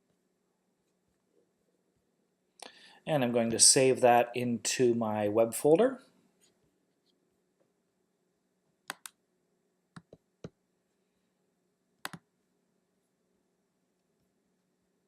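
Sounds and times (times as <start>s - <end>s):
computer mouse clicking: 8.9s - 9.2s, 10.0s - 10.6s, 12.0s - 12.2s.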